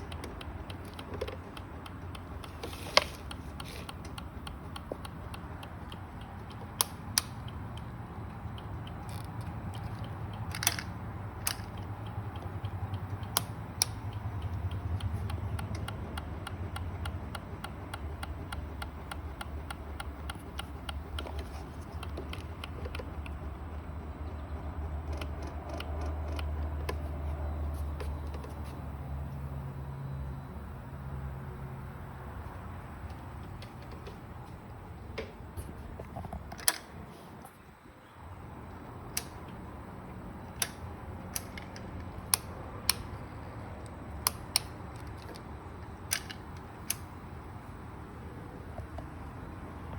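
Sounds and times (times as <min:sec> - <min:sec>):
starter relay clicking rapidly: 0:00.0 - 0:27.0, 0:38.8 - 0:47.5
steady low hum: 0:00.0 - 0:49.9.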